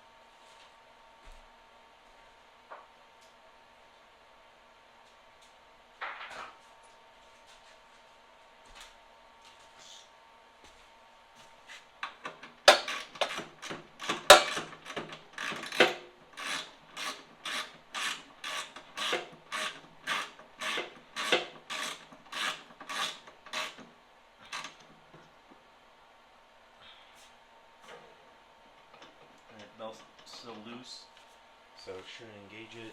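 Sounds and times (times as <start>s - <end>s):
ratchet wrench clicking: 12.7s - 23.8s.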